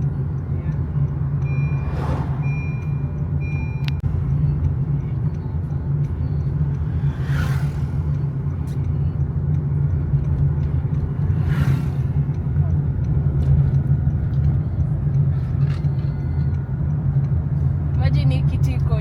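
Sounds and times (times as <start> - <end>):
vehicle rumble from inside cabin: 0.0 - 19.0
electronic beep: 1.4 - 4.6.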